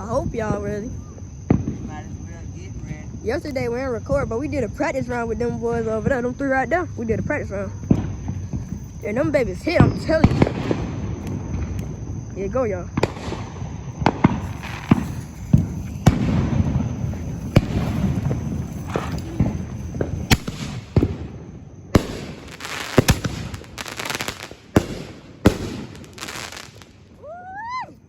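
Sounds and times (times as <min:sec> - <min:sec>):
fireworks bangs: 0:00.1 - 0:02.3, 0:07.8 - 0:27.3
fireworks crackling: 0:07.6 - 0:27.6.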